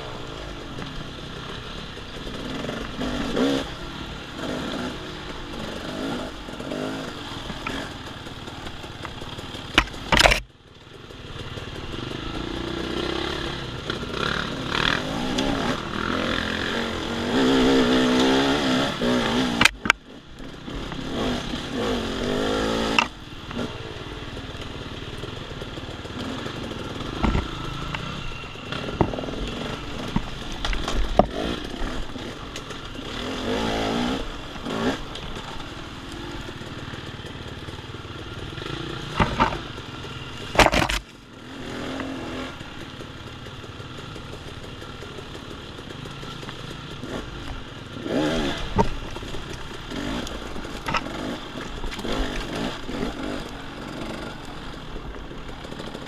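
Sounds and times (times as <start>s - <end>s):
dirt bike engine revving: 0.0s - 10.4s, 11.1s - 56.0s
sharp knocks and clatter: 7.4s - 10.5s, 27.0s - 28.1s, 39.1s - 41.1s.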